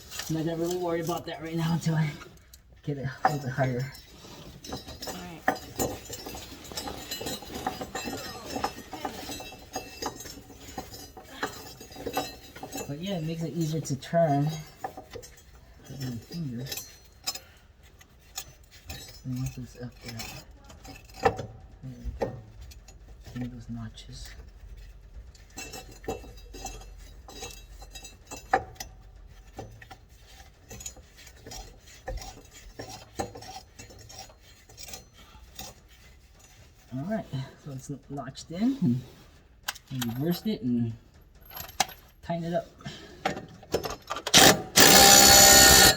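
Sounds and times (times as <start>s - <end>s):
light metallic clinks and taps: 0.0s - 38.3s, 39.2s - 45.0s.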